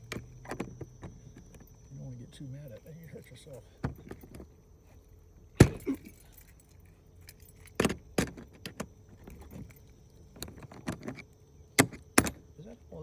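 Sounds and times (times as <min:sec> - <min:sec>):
metal lock knocks and clinks: 0:00.0 - 0:01.9, 0:03.8 - 0:04.5, 0:05.6 - 0:06.7, 0:07.3 - 0:12.5.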